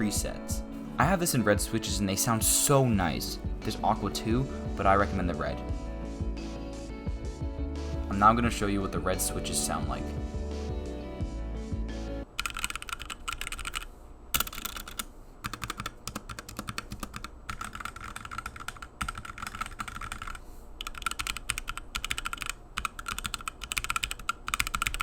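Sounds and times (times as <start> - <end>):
mechanical keyboard typing: 12.4 - 25.0.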